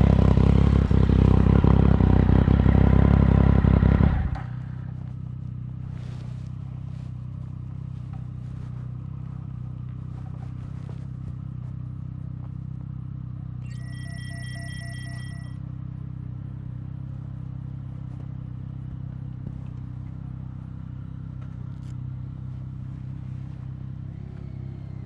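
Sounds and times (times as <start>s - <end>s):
motorcycle engine idling: 0.0s - 25.0s
electronic beeps: 13.6s - 15.6s.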